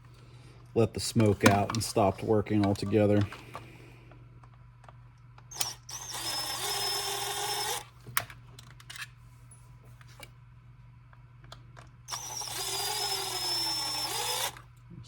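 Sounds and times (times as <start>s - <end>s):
steady low hum: 0.0s - 15.0s
power driver spinning: 1.0s - 3.7s, 5.4s - 7.9s, 12.1s - 14.7s.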